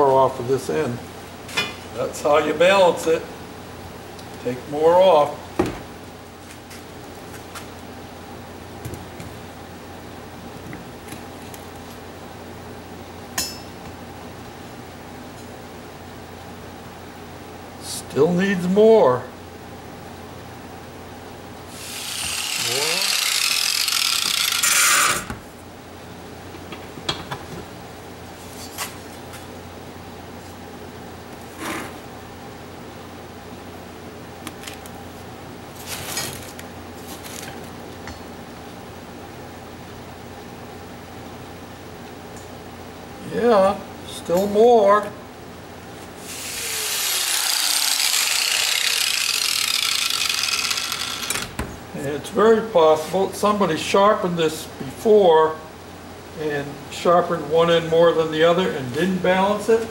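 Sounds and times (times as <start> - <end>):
power grinder grinding steel: 21.7 - 25.3, 46.2 - 51.5.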